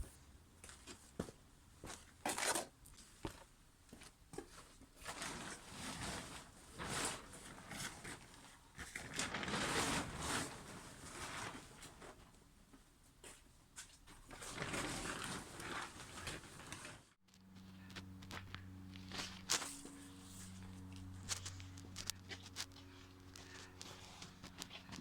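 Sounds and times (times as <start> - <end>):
rustling and clattering: 4.4 - 12.4, 13.8 - 25.0.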